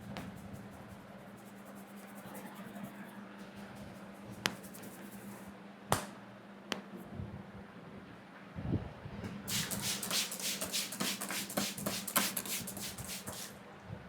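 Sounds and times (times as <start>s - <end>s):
hands rubbing head: 4.0s - 5.4s, 9.5s - 13.5s
sharp slaps on head: 5.9s - 6.9s.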